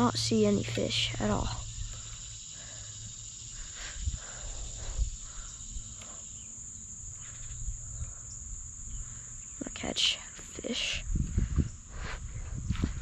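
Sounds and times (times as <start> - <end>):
crickets chirping: 0.0 - 13.0.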